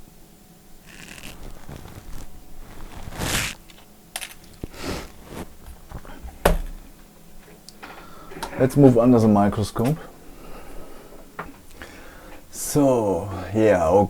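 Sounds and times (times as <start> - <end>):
brief rustle: 0.9 - 6.1.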